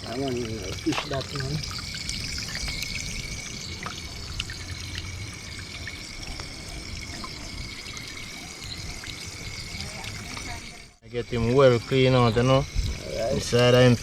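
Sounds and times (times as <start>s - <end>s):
small clicks and splashes: 0.0s - 11.0s
water running from a tap: 0.0s - 14.0s.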